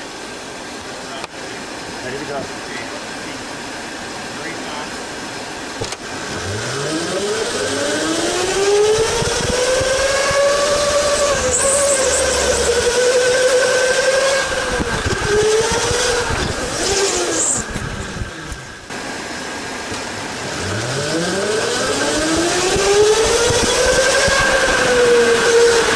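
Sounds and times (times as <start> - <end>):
electric go-kart motor whining: 5.8 - 18.9, 19.8 - 25.9
high squeals: 8.6 - 18.4.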